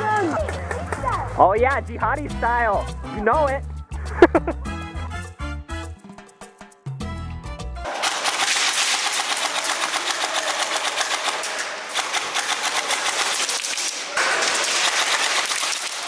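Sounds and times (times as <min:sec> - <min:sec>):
airsoft gun firing full auto: 0:07.9 - 0:16.0.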